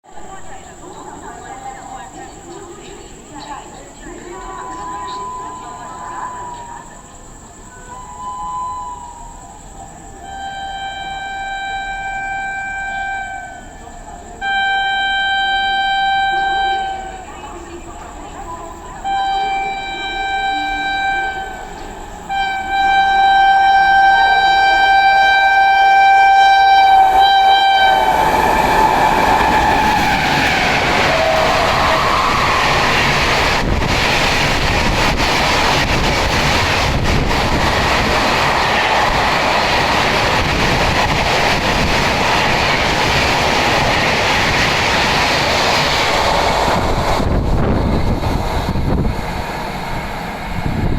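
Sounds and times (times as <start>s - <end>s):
express train passing: 0.0s - 50.9s
locomotive air horn: 10.2s - 13.8s, 14.4s - 17.2s, 19.0s - 33.3s.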